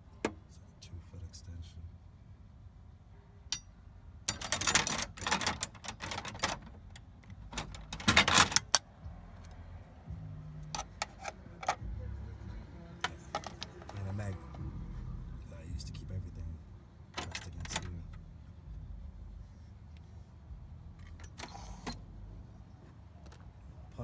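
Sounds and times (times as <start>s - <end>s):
steel hand tools clattering: 4.3s - 6.7s.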